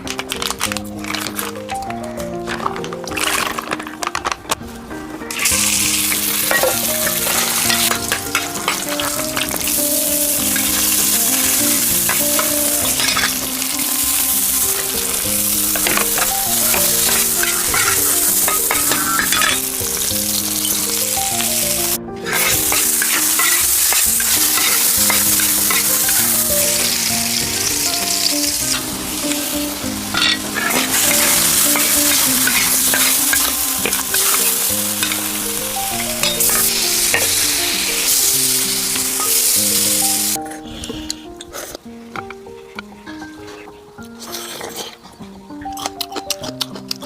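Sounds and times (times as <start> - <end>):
soft melodic background tune: 0.0 - 47.0
food sizzling in hot pan: 5.3 - 40.4
stirring in pan: 5.3 - 40.4.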